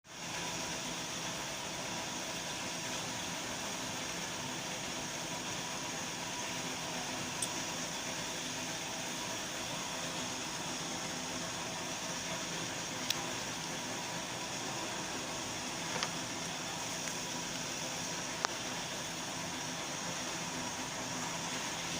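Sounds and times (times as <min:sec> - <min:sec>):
fan hiss with hum: 0:00.1 - 0:21.9.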